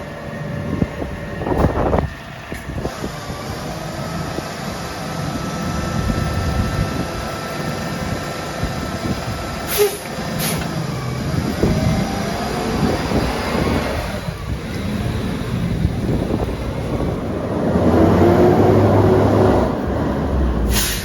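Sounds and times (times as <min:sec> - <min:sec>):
garbage truck engine rumble: 0:00.0 - 0:21.0
short hisses: 0:09.7 - 0:10.7, 0:20.6 - 0:21.0.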